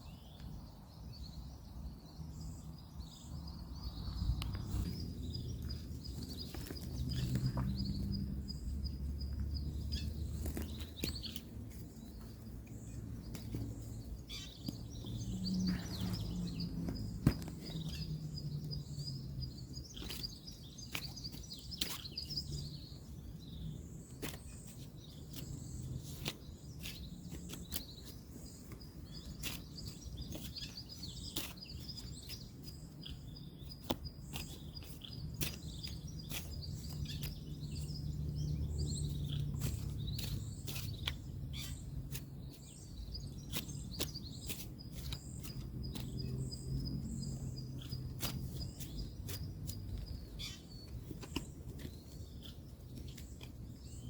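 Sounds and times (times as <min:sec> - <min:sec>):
birds chirping: 0:00.0 - 0:54.0
distant road traffic rumble: 0:00.0 - 0:54.0
playing cards clicking and snapping: 0:25.3 - 0:27.9, 0:50.9 - 0:52.0.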